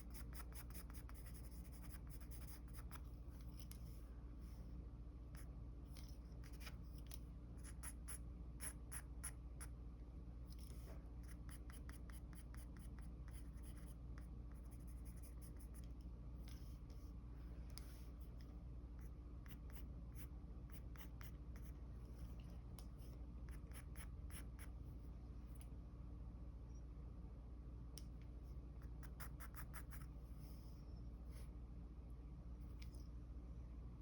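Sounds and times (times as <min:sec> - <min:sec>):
pencil scratching on paper: 0:00.0 - 0:03.0, 0:10.5 - 0:15.9.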